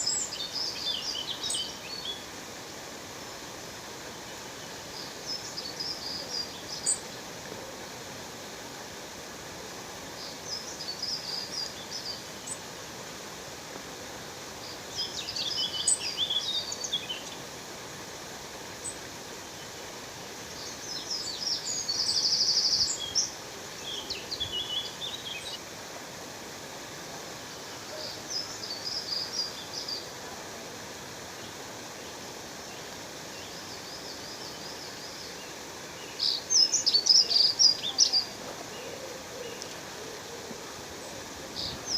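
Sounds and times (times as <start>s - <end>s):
waterfall rushing: 0.0s - 41.9s
small birds chirping: 20.5s - 25.6s, 31.4s - 41.9s.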